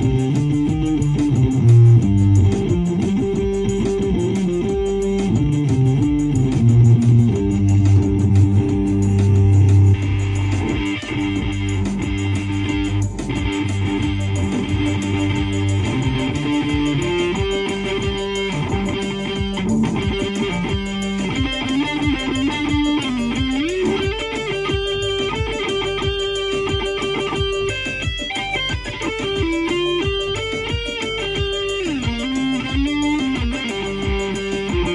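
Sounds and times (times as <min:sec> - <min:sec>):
electric guitar with string bends: 0:00.0 - 0:34.9.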